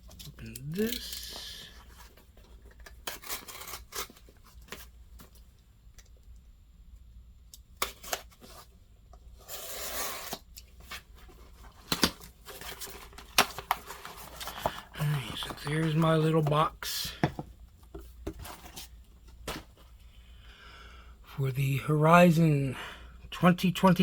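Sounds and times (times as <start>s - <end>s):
packaging rubbing and scraping: 0.8s - 4.6s, 9.4s - 10.4s, 11.2s - 16.6s
packaging tearing: 2.9s - 4.2s.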